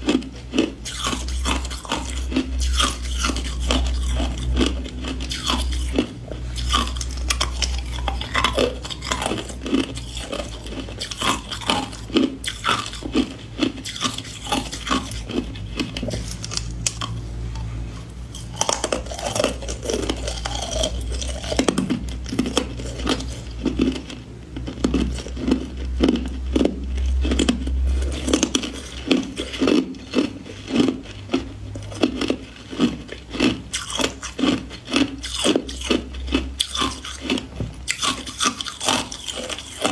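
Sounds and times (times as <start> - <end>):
ice cubes crunching in chewing: 0.0 - 39.9
low hum: 1.3 - 33.1.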